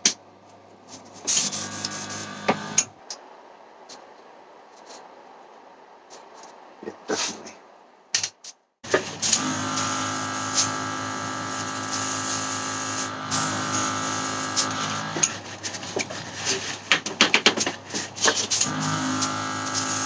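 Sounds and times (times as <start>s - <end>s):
airbrush compressor humming: 1.4s - 2.9s, 8.9s - 16.3s, 18.6s - 20.0s.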